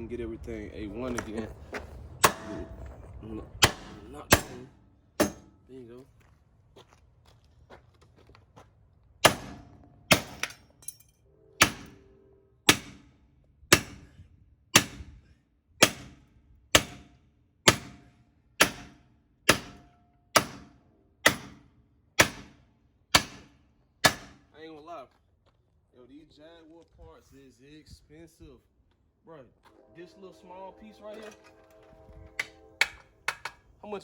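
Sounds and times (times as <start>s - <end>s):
hammer blows on metal: 11.6s - 12.1s, 12.7s - 16.2s, 30.0s - 33.7s.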